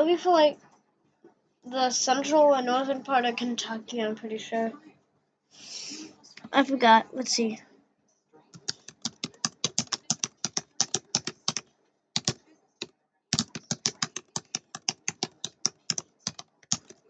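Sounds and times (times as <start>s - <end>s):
typing on computer keyboard: 8.6s - 12.4s, 13.3s - 17.0s.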